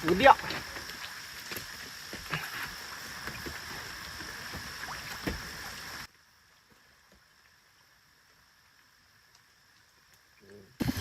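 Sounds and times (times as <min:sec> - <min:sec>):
faint hiss: 0:00.0 - 0:11.0
rain falling: 0:00.0 - 0:11.0.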